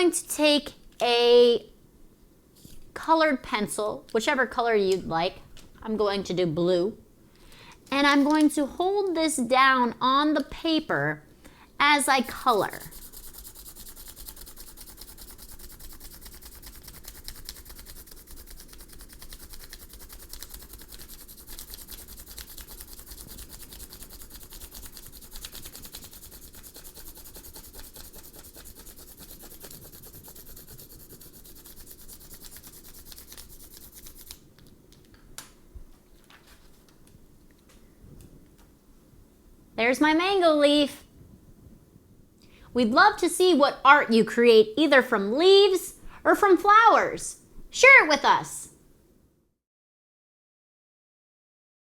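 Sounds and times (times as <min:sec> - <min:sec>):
pencil scratching over paper: 0:12.2 - 0:34.4.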